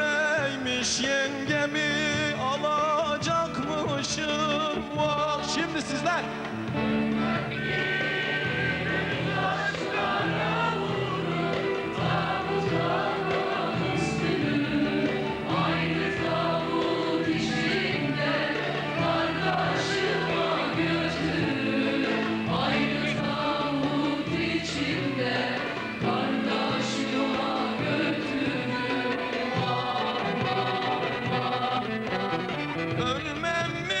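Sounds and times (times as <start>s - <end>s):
band playing sustained chords: 0.0s - 34.0s.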